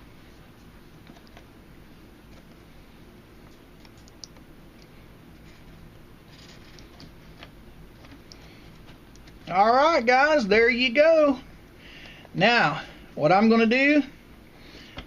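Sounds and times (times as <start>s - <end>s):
low steady hum: 0.0s - 15.0s
cord handling clicks and rustles: 5.4s - 9.6s.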